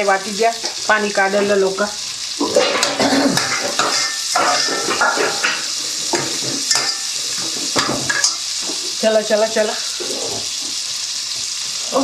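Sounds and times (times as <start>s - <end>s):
vegetables sizzling in a pan: 0.0s - 12.0s
spoon scraping a pan: 2.4s - 10.9s.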